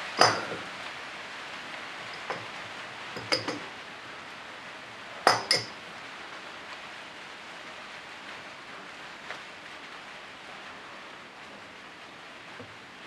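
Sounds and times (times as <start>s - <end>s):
steady low hiss: 0.0s - 13.0s
metal tools clinking: 0.2s - 0.7s, 2.1s - 2.5s, 3.2s - 3.6s, 5.3s - 5.7s.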